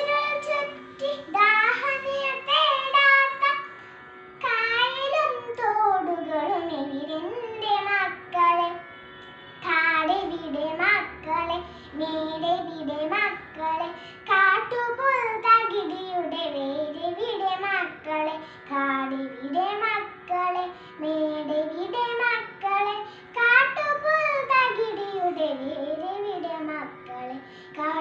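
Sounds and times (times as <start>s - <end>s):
child singing: 0.0s - 3.6s, 4.4s - 8.8s, 9.6s - 28.0s.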